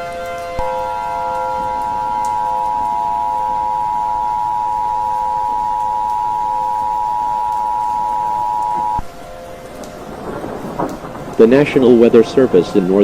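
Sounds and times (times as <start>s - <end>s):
two-tone alert signal: 2.0s - 9.1s.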